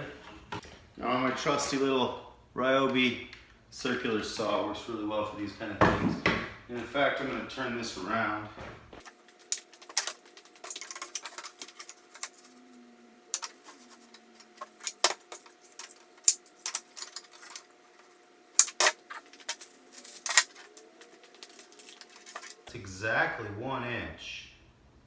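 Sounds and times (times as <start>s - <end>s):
tools and wood clicking on workbench: 9.0s - 12.6s, 13.3s - 22.7s.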